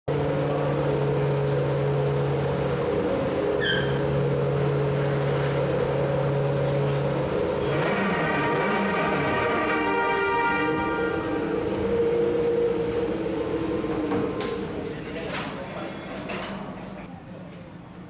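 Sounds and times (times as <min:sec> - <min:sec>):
racing engine idling: 0:00.1 - 0:16.0
stacked steady tones: 0:00.9 - 0:15.0.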